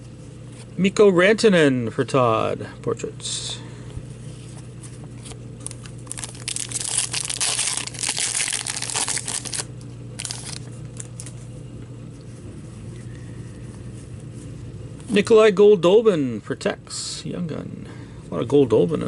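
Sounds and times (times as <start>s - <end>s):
steady low hum: 0.0s - 19.0s
foil wrapper crinkling and tearing: 5.6s - 11.3s.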